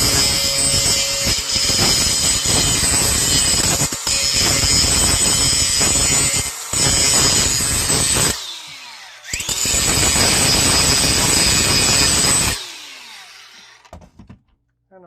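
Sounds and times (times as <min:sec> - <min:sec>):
grinder disc spinning down: 0:00.0 - 0:13.9
grinder grinding metal: 0:00.0 - 0:13.9.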